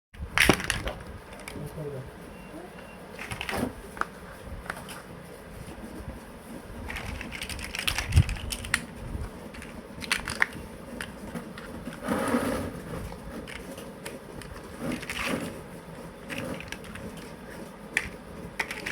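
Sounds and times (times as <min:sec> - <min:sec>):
plastic blocks clicking: 0:00.4 - 0:01.6, 0:06.9 - 0:08.9, 0:09.5 - 0:12.0, 0:13.4 - 0:15.6, 0:16.2 - 0:17.3, 0:17.9 - 0:18.9
rustling clatter of blocks: 0:00.4 - 0:01.6, 0:03.2 - 0:05.1, 0:06.6 - 0:18.9.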